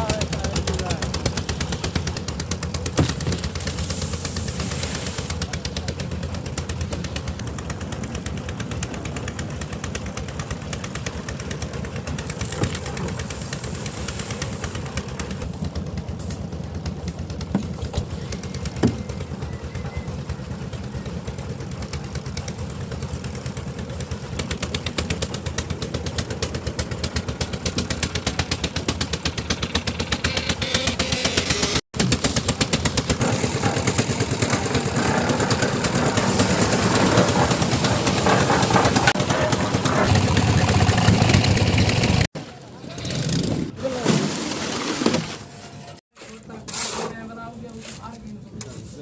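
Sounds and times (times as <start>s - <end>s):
concrete mixer engine running: 0.0s - 48.2s
sharp knocks: 2.9s - 3.5s.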